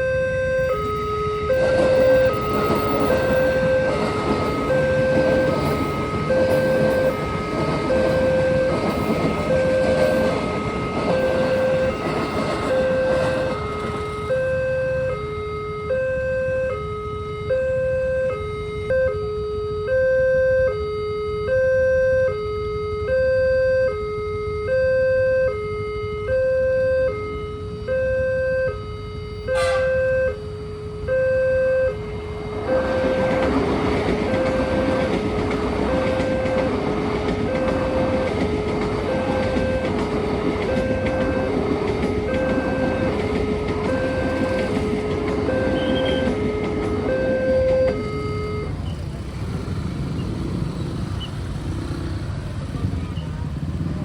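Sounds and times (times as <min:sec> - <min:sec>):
passing train rumble: 0:00.0 - 0:15.8, 0:31.8 - 0:54.0
level crossing two-tone alarm: 0:00.0 - 0:48.8.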